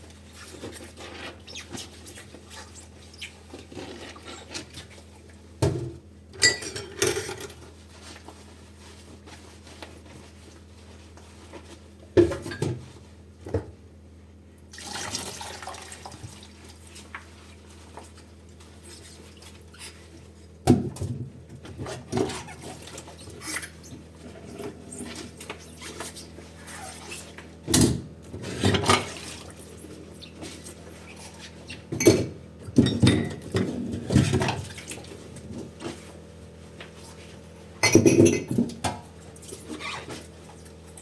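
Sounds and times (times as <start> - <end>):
dishes clinking in a sink: 5.7 - 7.6, 32.0 - 34.6, 37.8 - 39.0.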